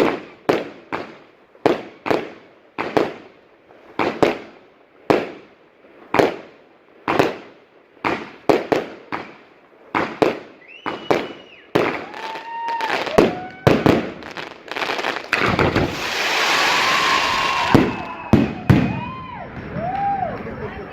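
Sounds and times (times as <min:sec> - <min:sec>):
firework crackling hiss: 0:00.0 - 0:20.3
firework bangs: 0:00.0 - 0:20.6
firework whistles: 0:10.0 - 0:20.4.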